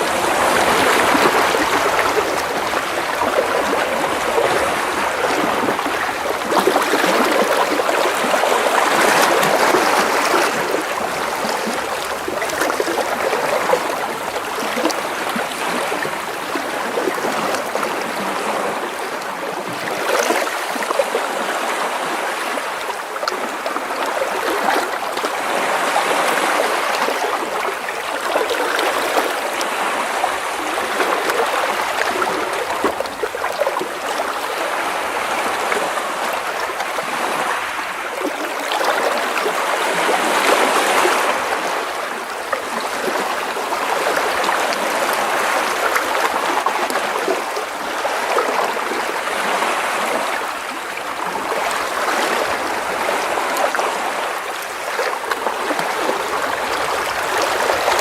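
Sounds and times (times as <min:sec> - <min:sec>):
sea waves splashing against rocks: 0:00.0 - 0:22.6.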